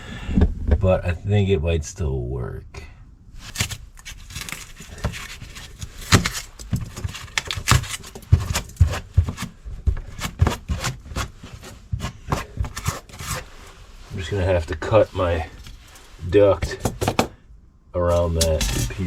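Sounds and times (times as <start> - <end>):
knocks and scrapes on metal parts: 16.6 - 17.4, 18.1 - 19.0.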